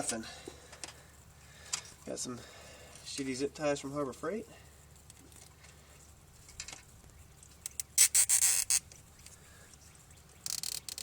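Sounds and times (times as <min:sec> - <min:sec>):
zip tie ratchet clicks: 0:07.6 - 0:08.8, 0:10.4 - 0:11.0.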